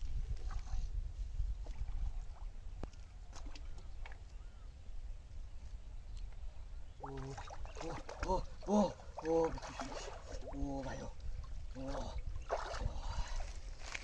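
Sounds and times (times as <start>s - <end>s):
man talking: 7.0s - 12.2s.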